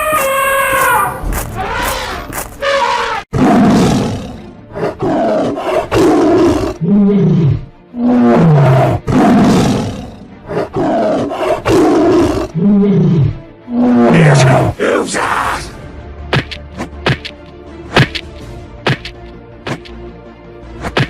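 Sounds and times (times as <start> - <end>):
animal roars: 1.6 - 14.7.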